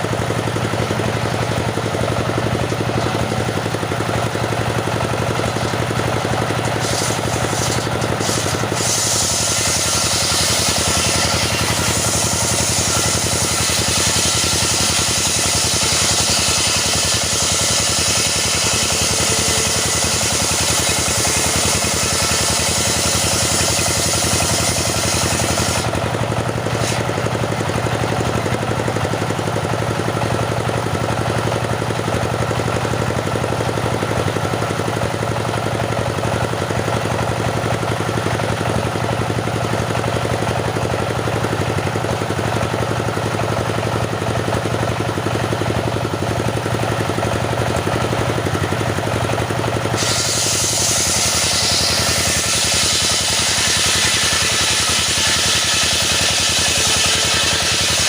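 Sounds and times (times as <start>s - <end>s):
saw engine running: 0.0s - 58.0s
saw cutting wood hissing: 5.3s - 27.6s, 49.3s - 58.0s.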